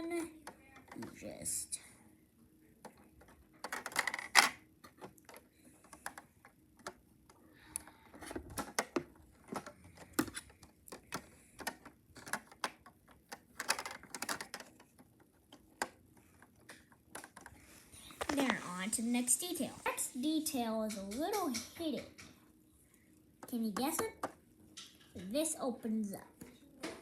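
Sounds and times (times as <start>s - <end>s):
plastic pieces clicking and rattling: 2.9s - 7.0s, 8.2s - 19.9s.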